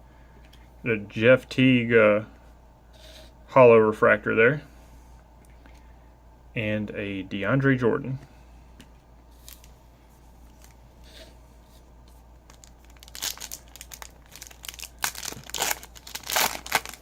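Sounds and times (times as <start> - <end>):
foil wrapper crinkling and tearing: 12.4 - 17.0.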